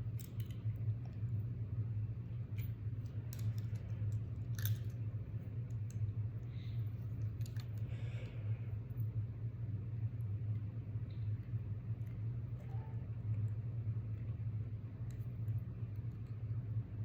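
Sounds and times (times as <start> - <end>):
low background hum: 0.0 - 17.0
pocket watch clicks and rustles: 2.6 - 5.0.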